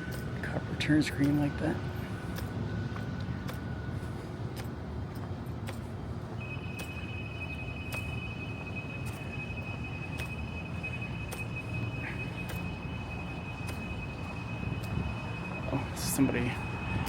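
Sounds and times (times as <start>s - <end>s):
city traffic rumble: 0.0s - 17.0s
walking footsteps: 0.0s - 17.0s
high-pitched tone: 6.4s - 17.0s.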